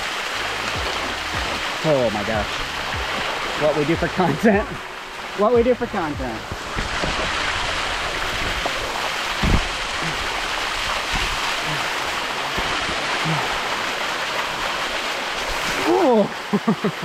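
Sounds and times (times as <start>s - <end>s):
waterfall rushing over rock: 0.0s - 17.0s.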